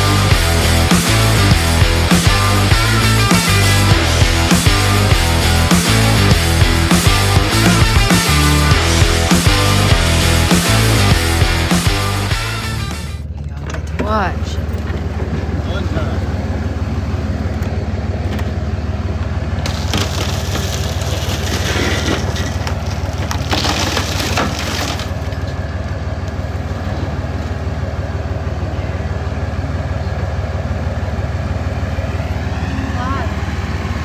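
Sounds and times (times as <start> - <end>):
low engine drone: 0.0 - 34.0
glass cracking: 19.6 - 25.6
sheet metal crunching: 19.6 - 25.7.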